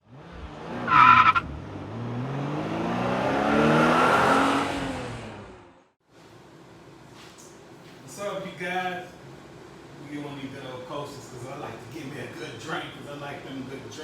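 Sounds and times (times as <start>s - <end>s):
car engine revving: 0.0s - 6.0s
loud tire squeal: 0.8s - 1.6s.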